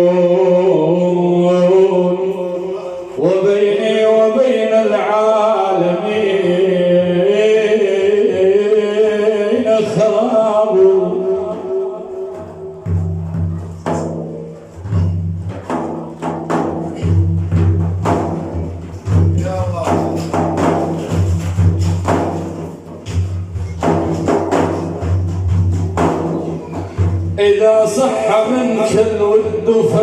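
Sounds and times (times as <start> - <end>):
frame drums booming and slapping: 11.1 - 30.0.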